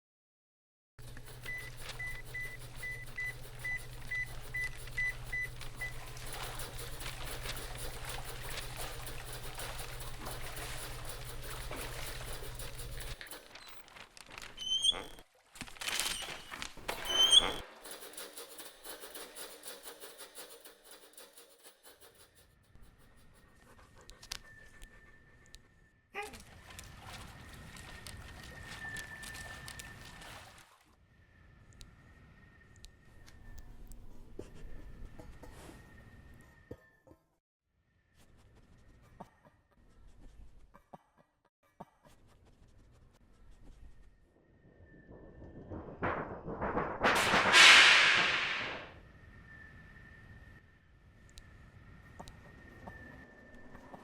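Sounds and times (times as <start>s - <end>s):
rustling noise: 1.0s - 22.3s, 45.5s - 48.9s.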